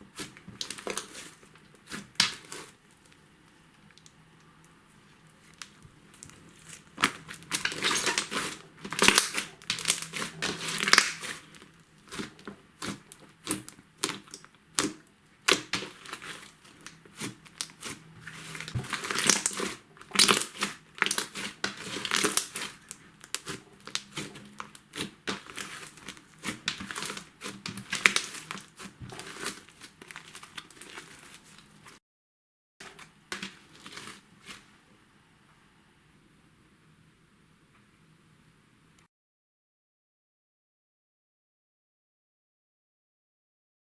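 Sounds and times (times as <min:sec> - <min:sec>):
slime crackling and popping: 0:00.1 - 0:03.2, 0:05.4 - 0:31.7.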